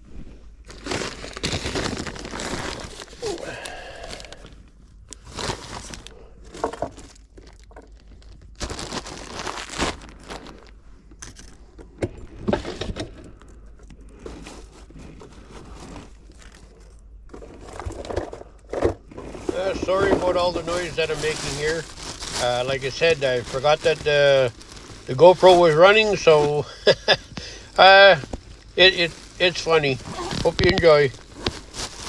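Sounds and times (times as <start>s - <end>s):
gear and bags rustling: 0.0s - 4.6s, 14.1s - 32.0s.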